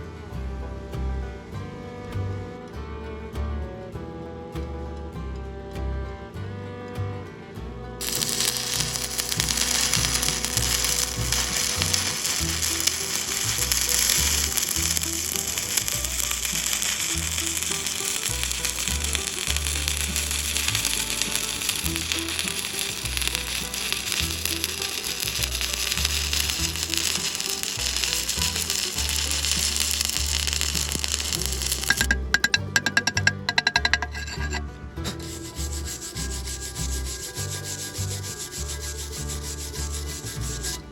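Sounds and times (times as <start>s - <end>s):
background music with bass line: 0.0s - 40.9s
welding arc crackling: 8.0s - 34.6s, 35.2s - 40.8s.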